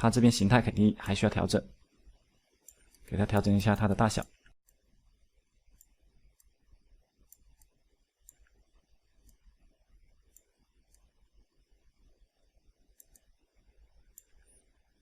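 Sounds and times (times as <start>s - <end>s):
computer mouse clicks: 2.6s - 3.6s, 5.7s - 6.6s, 7.2s - 8.6s, 9.2s - 9.5s, 10.2s - 11.2s, 12.9s - 14.8s.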